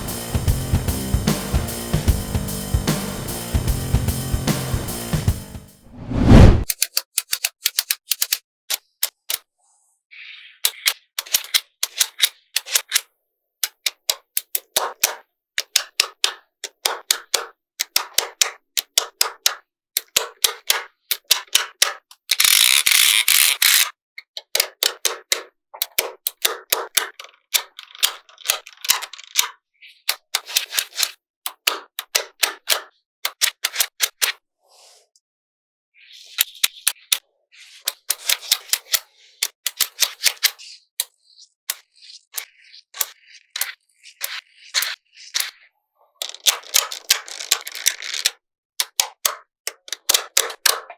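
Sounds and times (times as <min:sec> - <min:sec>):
magnetic balls clicking together: 0:10.7 - 0:34.2, 0:37.8 - 0:50.9.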